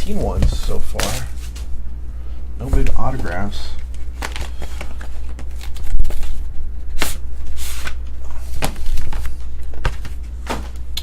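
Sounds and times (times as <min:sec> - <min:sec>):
low electrical hum: 0:00.0 - 0:11.0
packaging clicks and rustles: 0:03.2 - 0:06.4.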